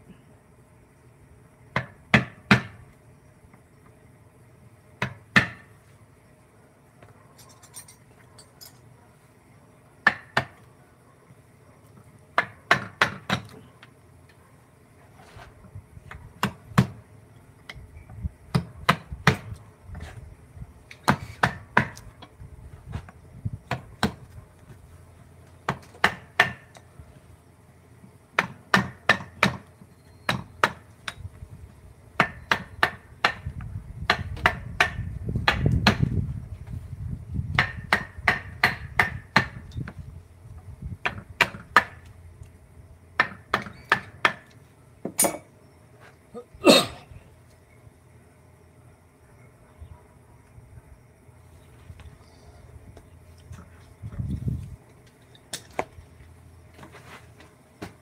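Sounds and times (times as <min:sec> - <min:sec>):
mallet striking chisel into wood: 0:37.6 - 0:39.6.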